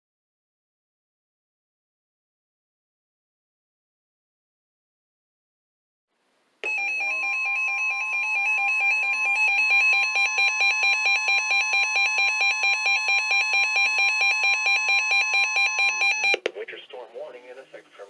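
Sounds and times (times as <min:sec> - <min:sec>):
two-tone warble alarm: 0:06.6 - 0:16.4
steady radio alert tone: 0:06.6 - 0:18.0.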